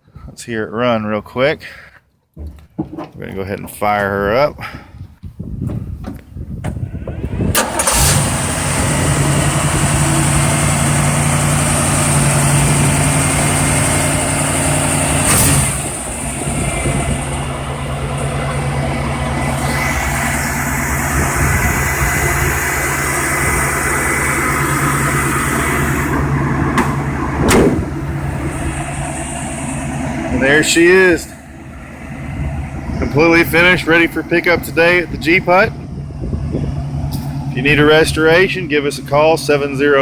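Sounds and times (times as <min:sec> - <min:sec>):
engine idling: 0:06.8 - 0:40.0
engine starter cranking: 0:07.4 - 0:28.9.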